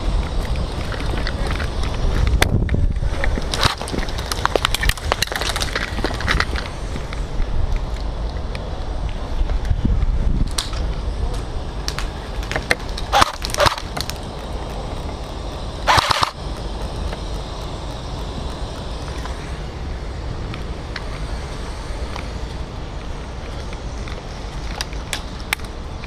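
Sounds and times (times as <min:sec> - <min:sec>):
low rumble on microphone: 0:00.0 - 0:26.0
airsoft gun shots: 0:13.1 - 0:14.0, 0:15.8 - 0:17.3.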